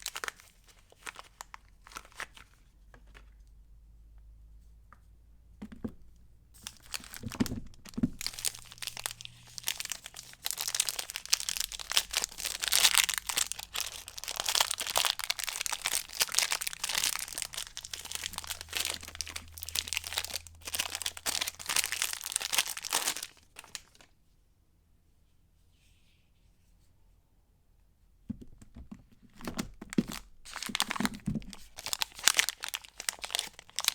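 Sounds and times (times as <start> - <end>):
wrapper crinkling: 0.0 - 2.6, 6.6 - 24.1, 29.9 - 33.9.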